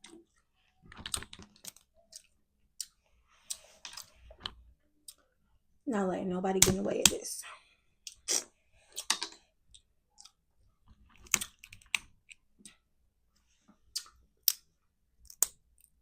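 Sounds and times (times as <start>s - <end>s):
faint chewing: 9.7s - 12.8s
crab shell cracking: 15.2s - 15.9s.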